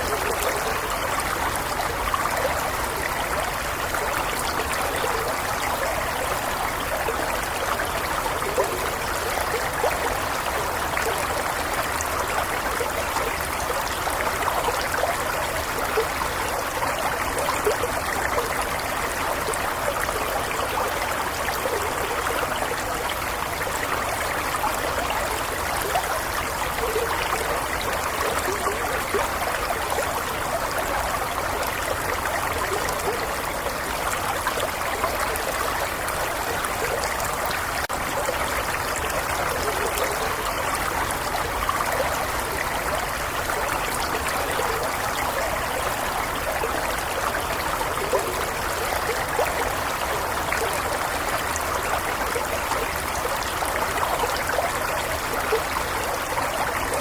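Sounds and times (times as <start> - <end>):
stream babbling over stones: 0.0 - 57.0.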